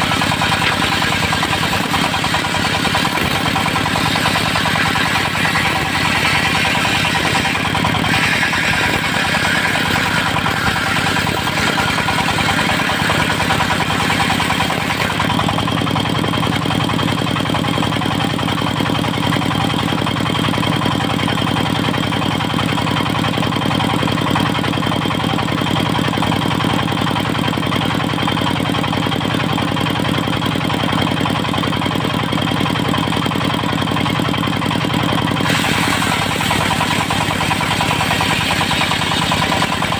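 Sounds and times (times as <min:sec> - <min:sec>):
steady high whine: 0:00.0 - 0:15.3
diesel engine running: 0:00.0 - 0:39.9.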